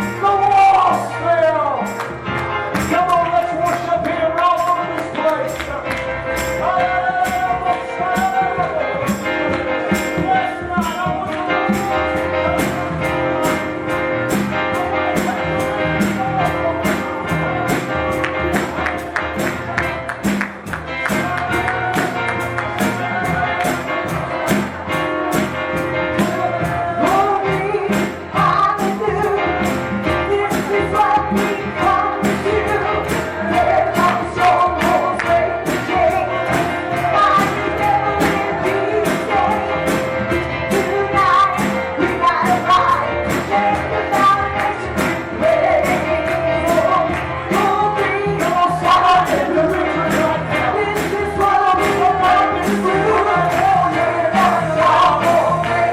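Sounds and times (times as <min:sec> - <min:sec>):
church music: 0:00.0 - 0:55.9
tambourine beat: 0:00.0 - 0:55.9
singing: 0:26.1 - 0:40.1, 0:40.7 - 0:55.9.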